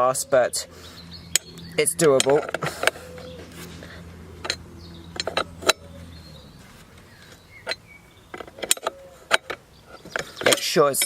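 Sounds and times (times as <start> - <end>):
low steady hum: 0.0 - 10.4
spanner clicking on bolt: 4.4 - 5.8, 7.6 - 11.0.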